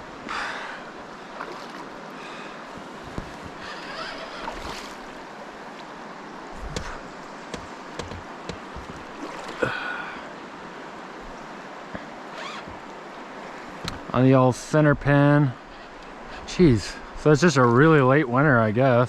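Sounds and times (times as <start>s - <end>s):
river water rushing: 0.0s - 19.0s
wind: 0.0s - 19.0s
sharp knocks and clicks: 6.7s - 9.0s.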